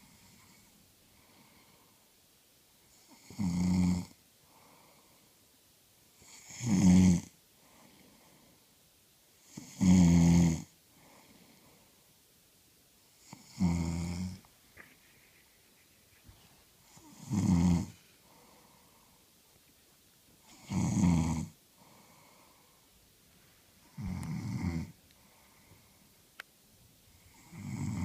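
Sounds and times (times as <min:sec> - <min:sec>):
woman snoring: 0:03.0 - 0:04.2, 0:06.2 - 0:07.3, 0:09.5 - 0:10.7, 0:13.2 - 0:14.4, 0:16.9 - 0:18.0, 0:20.5 - 0:21.6, 0:23.9 - 0:25.0, 0:27.2 - 0:28.0.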